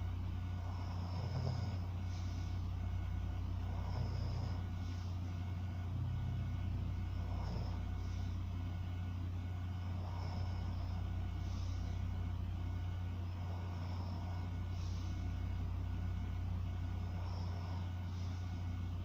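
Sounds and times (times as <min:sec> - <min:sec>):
soft sleeping breathing: 0:00.0 - 0:19.0
steady low hum: 0:00.0 - 0:19.0.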